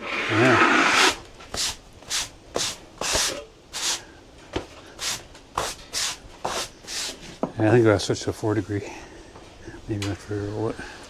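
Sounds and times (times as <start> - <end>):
swishing scraping strokes: 0.0 - 3.3.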